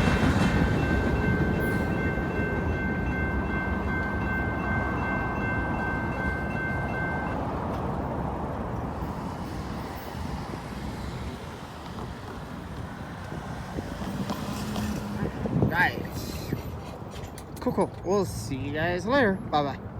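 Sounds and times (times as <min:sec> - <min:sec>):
freight train wheels rumbling on rail: 0:00.0 - 0:18.4.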